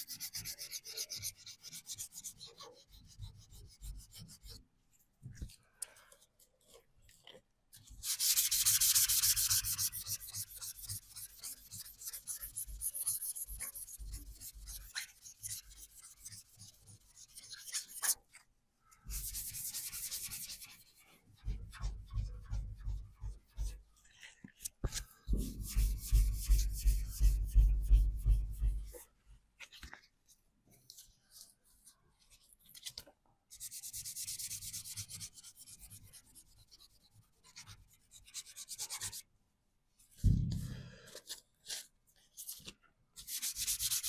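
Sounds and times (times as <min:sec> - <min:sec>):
hand sanding of bodywork: 0:08.0 - 0:18.2, 0:19.1 - 0:23.9, 0:25.3 - 0:29.0, 0:43.3 - 0:44.0.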